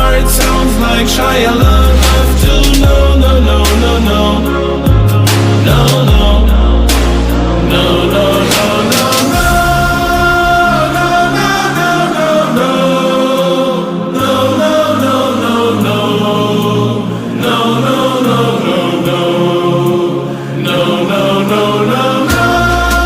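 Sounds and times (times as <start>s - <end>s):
choir-like singing over held chords: 0.0s - 23.0s.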